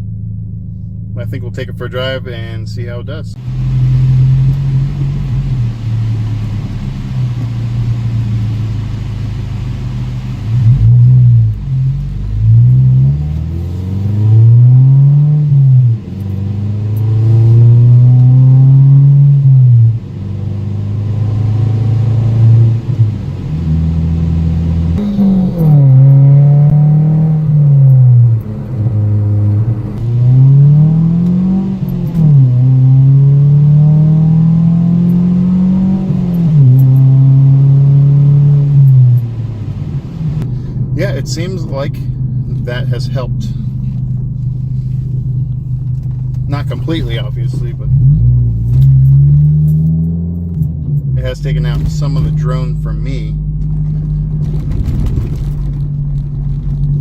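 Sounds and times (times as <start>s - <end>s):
car engine revving: 0.0s - 57.0s
low cabin drone: 20.9s - 57.0s.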